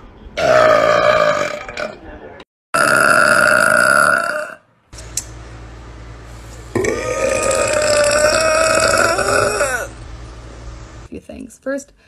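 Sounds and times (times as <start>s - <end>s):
woman burping: 2.8s - 4.6s, 6.8s - 9.9s.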